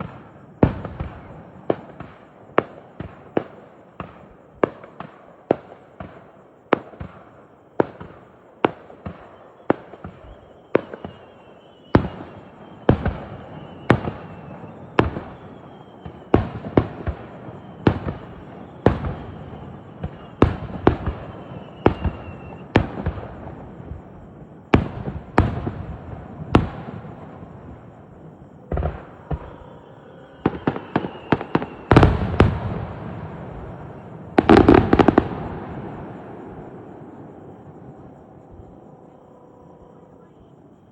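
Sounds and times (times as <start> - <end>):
descending whistling tone: 9.3 - 22.7, 29.0 - 40.4.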